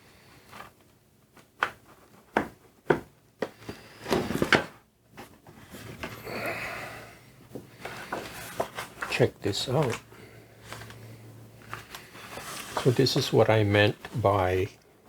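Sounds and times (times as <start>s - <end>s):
soft rustle: 10.6s - 13.4s.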